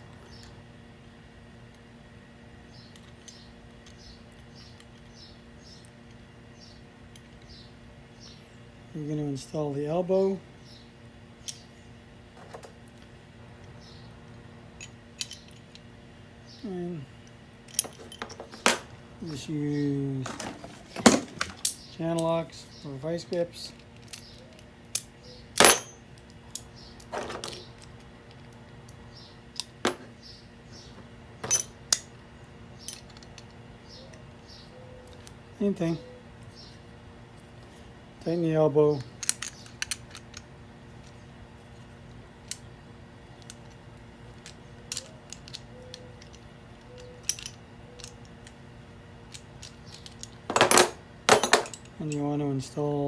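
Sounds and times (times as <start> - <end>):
low steady hum: 0.0 - 53.0
metallic clank with ringing: 25.6 - 26.2.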